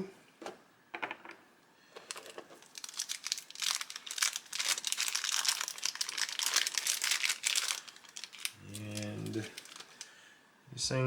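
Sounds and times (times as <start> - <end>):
plastic packaging crinkling: 1.9 - 10.2.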